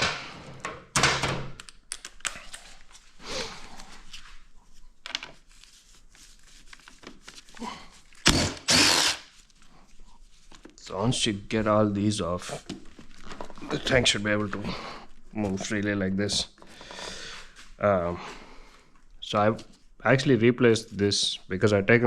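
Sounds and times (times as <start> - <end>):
cordless power driver whirring: 8.3 - 9.2.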